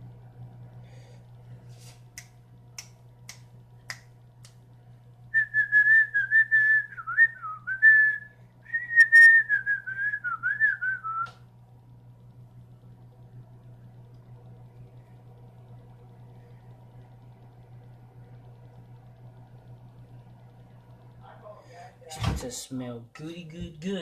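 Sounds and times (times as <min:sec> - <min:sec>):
low hum: 0:00.0 - 0:22.1
person whistling a tune: 0:05.4 - 0:11.4.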